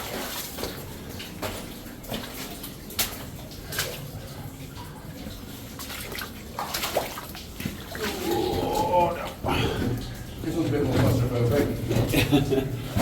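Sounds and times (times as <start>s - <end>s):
footsteps splashing in water: 0.0s - 4.2s, 5.1s - 10.2s
running water: 0.0s - 13.0s.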